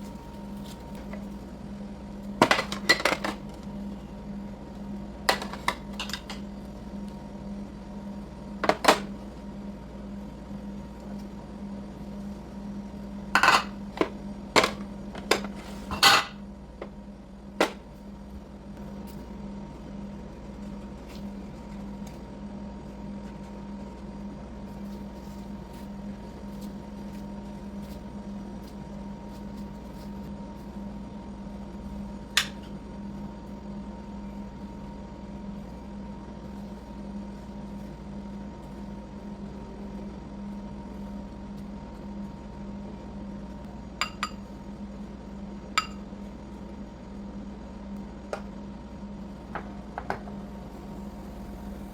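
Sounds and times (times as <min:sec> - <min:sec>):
steady low hum: 0:00.0 - 0:51.9
utensils and dishes clattering: 0:05.3 - 0:06.4, 0:13.4 - 0:13.8.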